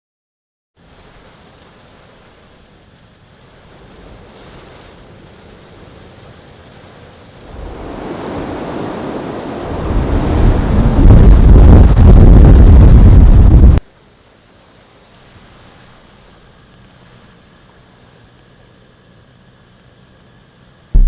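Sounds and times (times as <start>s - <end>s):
wind buffeting microphone: 3.7s - 13.8s
storm wind gusting: 7.4s - 13.8s.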